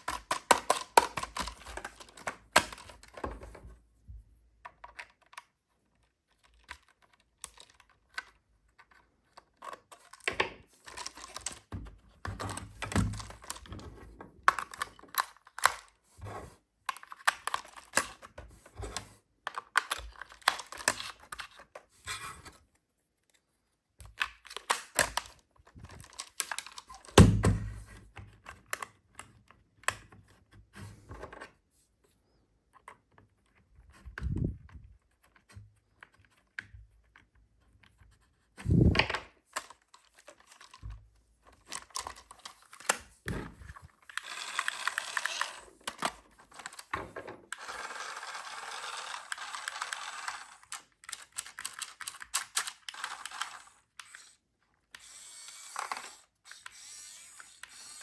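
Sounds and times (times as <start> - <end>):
plastic packaging clicks and rustling: 0.0 - 3.6, 4.7 - 16.0, 19.4 - 21.8, 24.0 - 27.4, 39.0 - 54.4.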